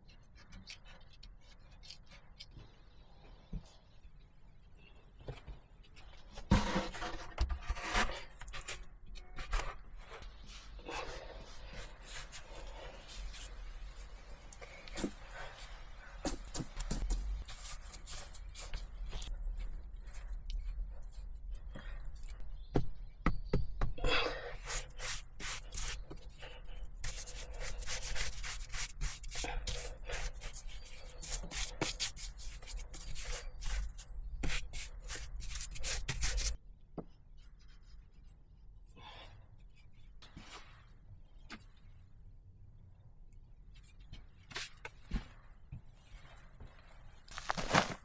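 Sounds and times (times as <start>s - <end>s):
scraping on wood: 6.0s - 13.5s, 47.3s - 48.0s.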